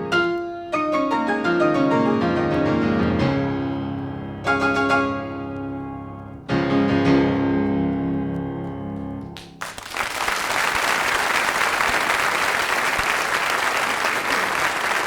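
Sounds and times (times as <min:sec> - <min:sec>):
piano chord: 0:00.0 - 0:09.5
audience applause: 0:09.4 - 0:15.0.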